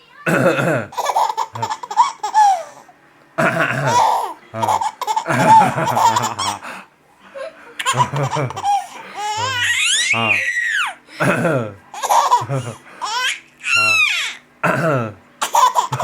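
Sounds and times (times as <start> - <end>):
man coughing: 0.3 - 1.0, 3.4 - 6.8, 11.2 - 11.8, 14.6 - 15.2
small child laughing: 0.9 - 2.8, 3.6 - 6.6, 7.8 - 11.4, 12.0 - 14.4, 15.4 - 16.0.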